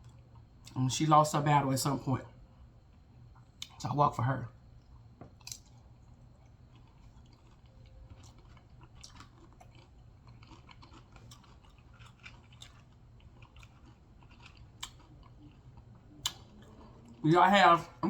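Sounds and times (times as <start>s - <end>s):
chips chewing crunches: 4.9s - 17.3s.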